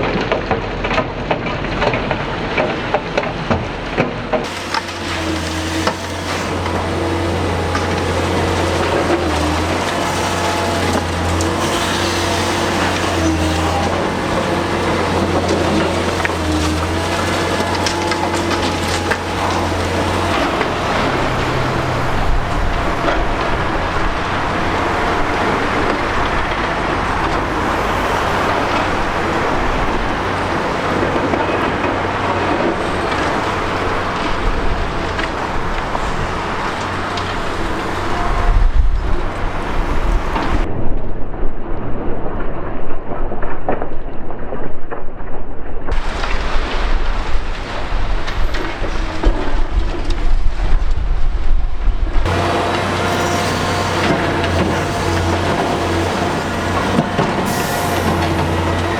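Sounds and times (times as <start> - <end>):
concrete crunching and breaking: 0.0 - 40.7
heavy low rumble with jolts: 0.0 - 42.4, 45.9 - 58.9
diesel engine running: 4.3 - 40.7, 52.2 - 58.9.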